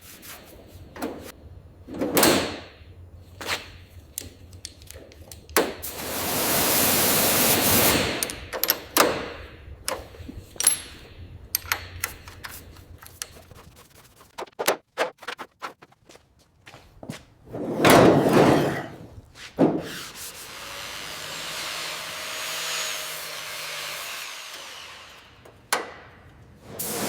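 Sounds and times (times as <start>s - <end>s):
clicks and knocks of handled parts: 3.4s - 5.9s, 8.1s - 14.2s.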